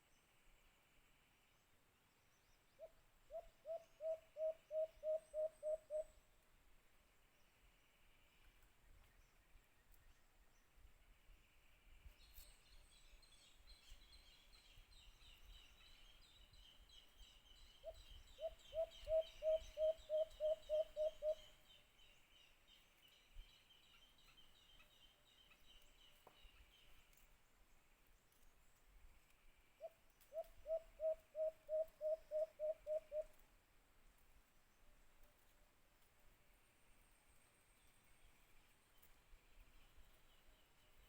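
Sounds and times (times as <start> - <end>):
dove cooing: 3.3 - 6.1, 18.4 - 21.4, 30.3 - 33.3.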